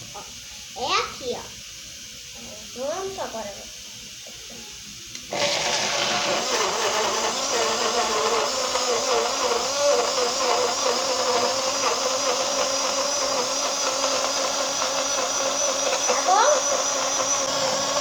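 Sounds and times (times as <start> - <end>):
electric blender running: 5.1 - 18.0.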